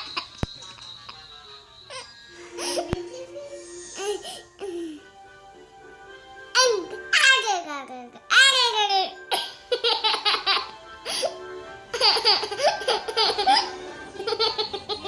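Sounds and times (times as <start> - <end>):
baby giggling: 8.4 - 11.3, 11.9 - 15.0.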